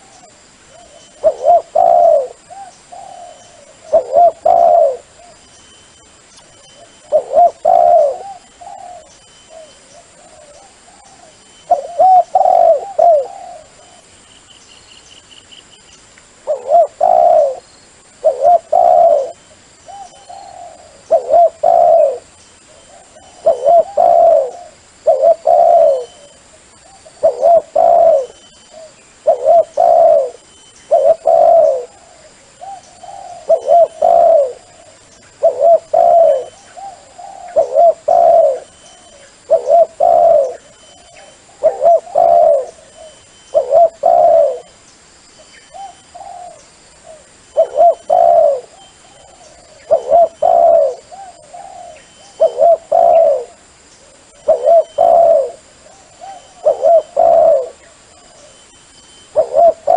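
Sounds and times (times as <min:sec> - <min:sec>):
dove cooing: 0:00.0 - 0:05.4, 0:06.6 - 0:14.1, 0:16.4 - 0:44.8, 0:45.7 - 0:58.6, 0:59.3 - 0:59.9.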